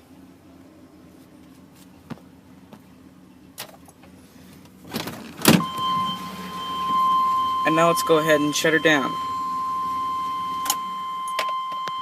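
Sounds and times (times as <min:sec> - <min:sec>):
engine idling: 0:00.0 - 0:12.0
high-pitched tone: 0:05.6 - 0:12.0.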